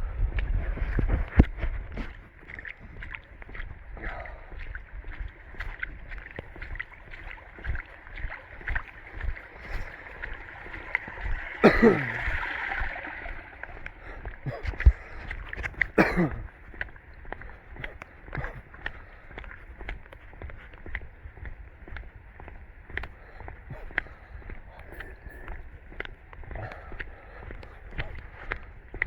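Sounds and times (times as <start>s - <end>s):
water running and splashing: 1.9s - 20.7s.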